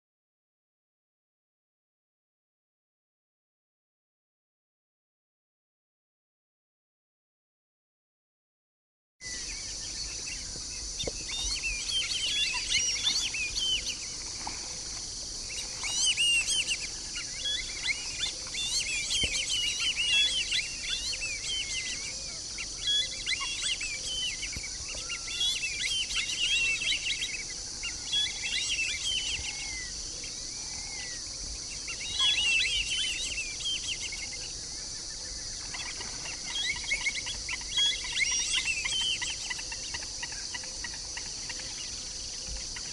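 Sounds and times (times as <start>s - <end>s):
insect buzz: 9.2s - 42.9s
ducks whistling calls: 11.2s - 14.6s, 15.5s - 29.9s, 31.8s - 34.4s, 35.6s - 42.9s.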